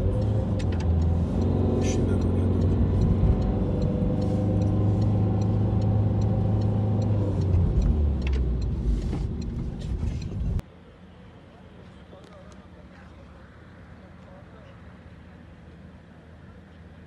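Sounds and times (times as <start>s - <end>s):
vehicle engine running: 0.0s - 10.6s.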